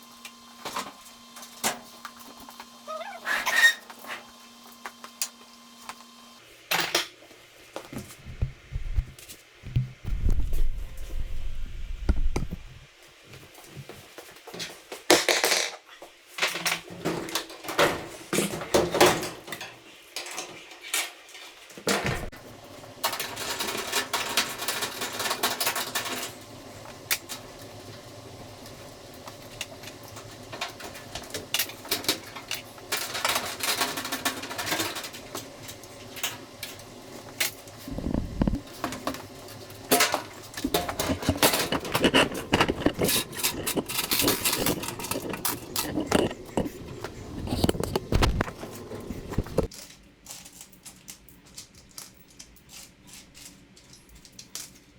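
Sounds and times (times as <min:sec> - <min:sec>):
steady low hum: 0:08.1 - 0:13.0, 0:37.4 - 0:49.7.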